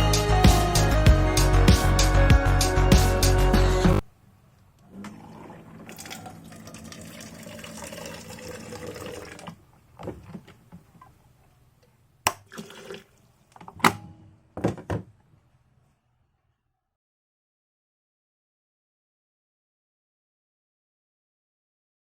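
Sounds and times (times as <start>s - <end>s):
water pouring into a container: 5.2s - 9.6s, 12.4s - 13.2s.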